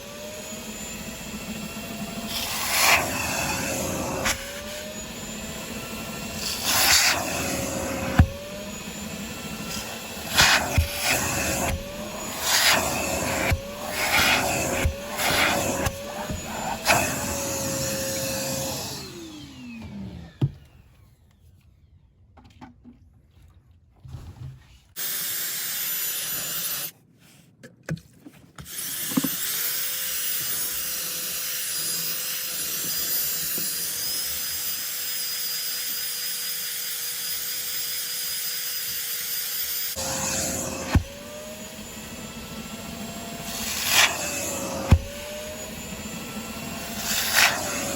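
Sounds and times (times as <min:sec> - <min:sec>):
shop vacuum motor running: 0:00.0 - 0:21.4, 0:37.0 - 0:47.9.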